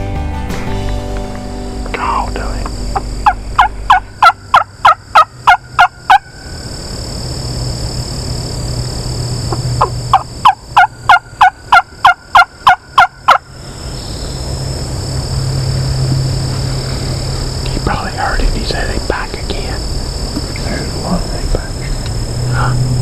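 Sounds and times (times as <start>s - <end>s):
turkey call hen yelps: 3.2s - 6.5s, 9.5s - 13.4s.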